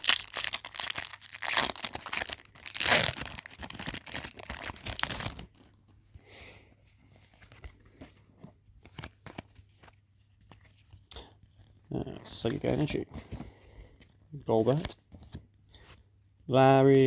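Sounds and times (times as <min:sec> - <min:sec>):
foil wrapper crinkling and tearing: 0:00.0 - 0:05.7.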